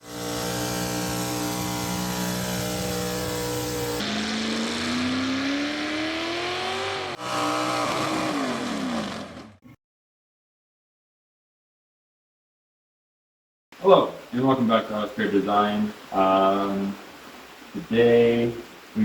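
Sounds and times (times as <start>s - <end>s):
motorcycle engine revving: 0.0s - 9.6s.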